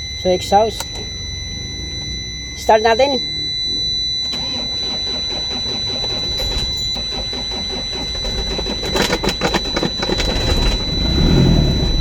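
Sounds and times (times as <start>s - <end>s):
high-pitched dashboard buzzer: 0.0s - 12.0s
starter motor cranking diesel engine: 3.2s - 12.0s.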